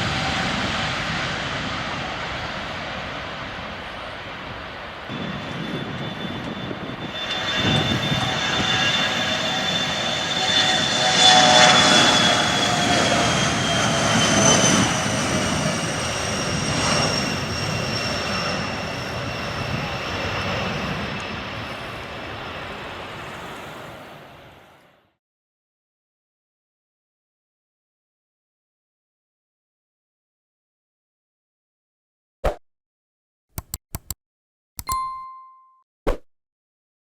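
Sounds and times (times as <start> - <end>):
airplane engines passing by: 0.0 - 25.1.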